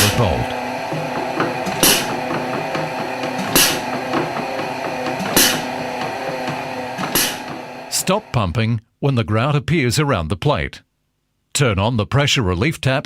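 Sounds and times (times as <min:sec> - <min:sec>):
pump stroke hiss: 0:00.0 - 0:08.3
steady running drone: 0:00.0 - 0:08.4.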